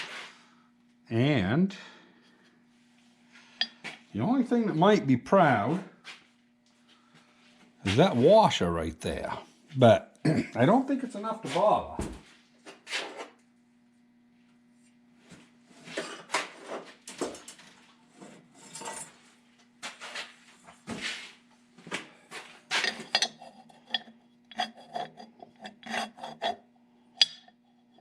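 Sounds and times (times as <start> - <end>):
faint steady hum: 0.1 - 28.0
metal scraping on metal: 18.5 - 19.2, 22.7 - 26.6.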